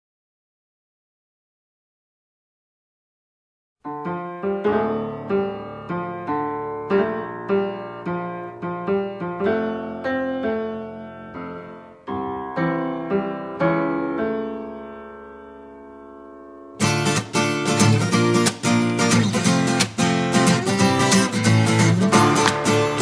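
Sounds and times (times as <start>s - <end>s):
solo piano chords: 3.9s - 16.8s, 22.0s - 23.0s.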